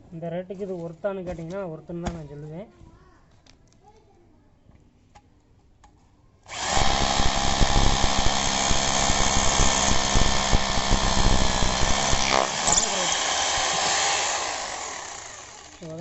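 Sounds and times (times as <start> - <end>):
hammer drill boring into concrete: 6.5 - 16.0.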